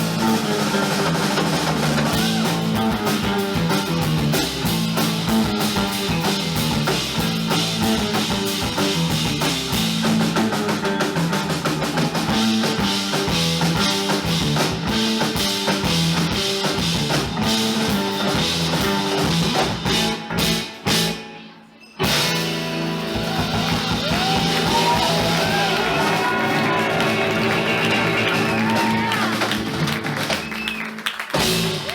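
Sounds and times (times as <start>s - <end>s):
rock band playing: 0.0s - 31.9s.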